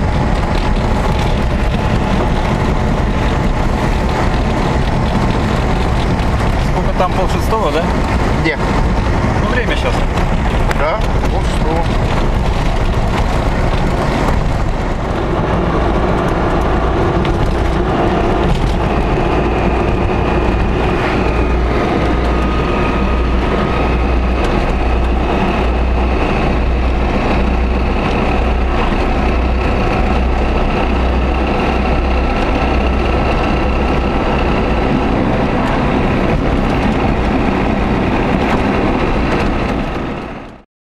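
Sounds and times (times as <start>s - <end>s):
car engine and road noise: 0.0s - 40.6s.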